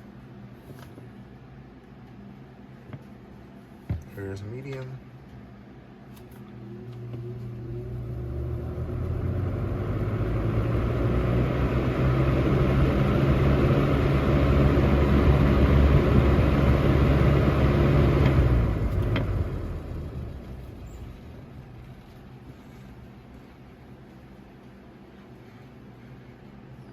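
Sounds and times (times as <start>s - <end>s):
box fan motor hum and air rush: 0.0s - 26.9s
fan click: 18.0s - 19.4s.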